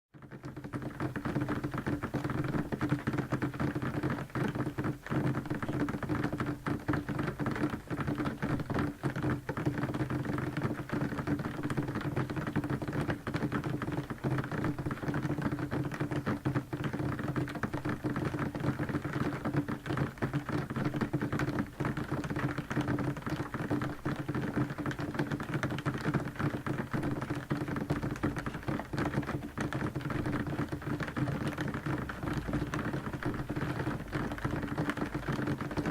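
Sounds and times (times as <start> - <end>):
heavy rain on a window: 0.2 - 35.9.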